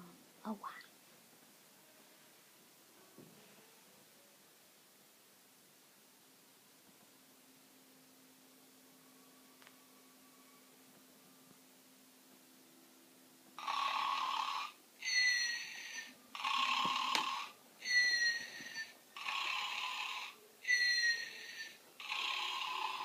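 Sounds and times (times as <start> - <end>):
snoring: 13.6 - 14.8, 15.9 - 17.6, 18.7 - 20.4, 21.4 - 23.0.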